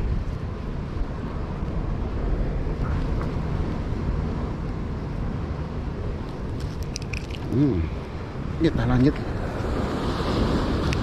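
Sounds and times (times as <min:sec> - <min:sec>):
sea surf rumbling: 0:00.0 - 0:11.0
wind buffeting microphone: 0:00.0 - 0:11.0.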